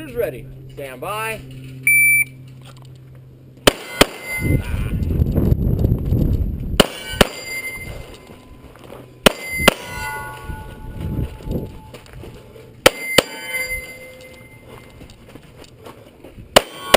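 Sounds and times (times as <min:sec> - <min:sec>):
low rumble: 0:00.0 - 0:12.9
pistol shots: 0:03.6 - 0:04.5, 0:06.8 - 0:07.8, 0:09.2 - 0:10.0, 0:12.8 - 0:13.4, 0:16.6 - 0:16.9
steel targets ringing: 0:03.7 - 0:04.7, 0:06.8 - 0:11.0, 0:12.8 - 0:15.0, 0:16.6 - 0:16.9.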